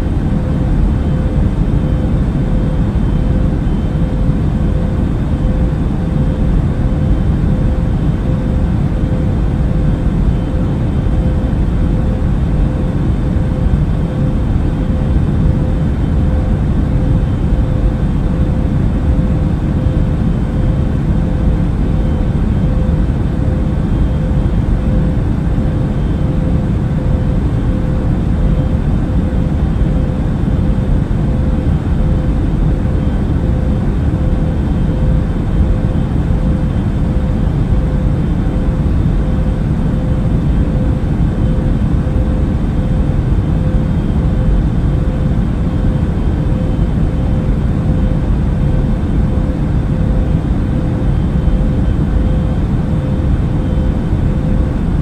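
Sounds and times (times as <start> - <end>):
airliner engines rumbling: 0.0 - 55.0
constant cabin hum: 0.0 - 55.0.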